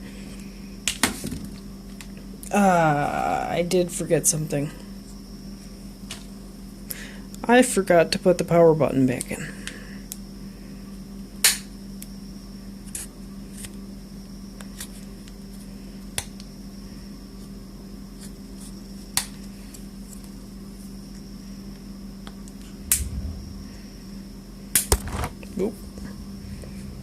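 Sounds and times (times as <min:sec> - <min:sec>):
low hum: 0:22.6 - 0:27.0.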